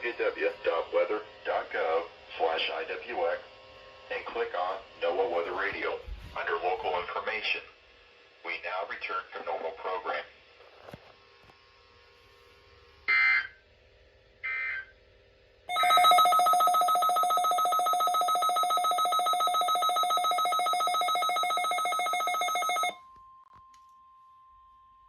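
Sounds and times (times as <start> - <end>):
pulsing electronic alarm tone: 14.4 - 14.9, 15.7 - 23.0
faint steady warning tone: 14.4 - 15.0, 15.7 - 25.0.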